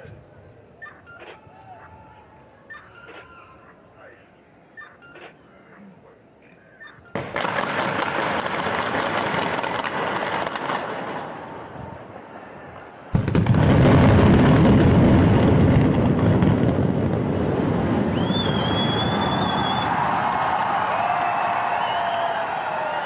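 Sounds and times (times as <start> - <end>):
high whistle: 18.1 - 20.2, 21.3 - 22.7.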